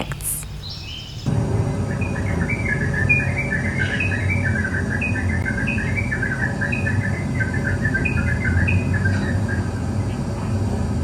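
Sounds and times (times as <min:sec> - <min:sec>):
songbirds chirping: 0:00.0 - 0:11.0
low rumble: 0:01.2 - 0:11.0.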